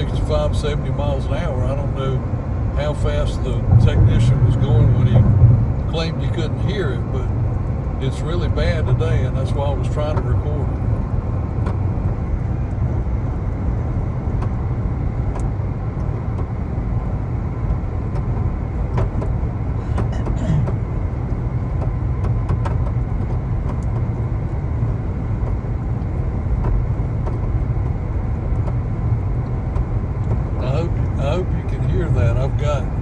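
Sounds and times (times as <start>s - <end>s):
road and wind rumble in car: 0.0s - 33.0s
faint irregular taps: 21.8s - 24.3s, 25.4s - 28.8s, 29.4s - 32.7s.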